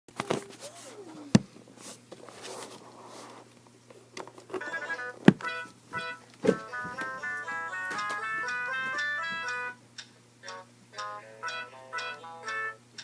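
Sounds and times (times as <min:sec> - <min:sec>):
simple electronic tune: 0:04.6 - 0:09.8, 0:10.4 - 0:12.8.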